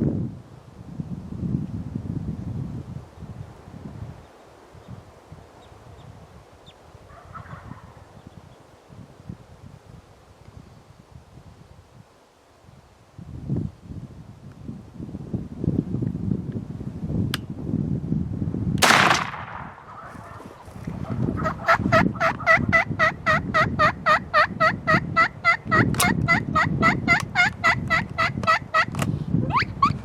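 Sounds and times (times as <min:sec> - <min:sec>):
turkeys yelping: 0:07.1 - 0:08.0, 0:19.9 - 0:28.9
shotgun shot: 0:18.8 - 0:19.9.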